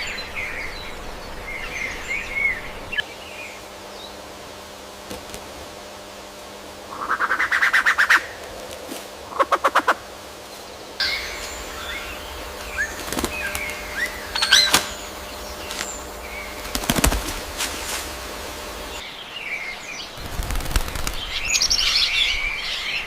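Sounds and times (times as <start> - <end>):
peafowl harsh calls: 6.9 - 10.1, 11.0 - 19.0
bird chirps and whistles: 11.0 - 16.6.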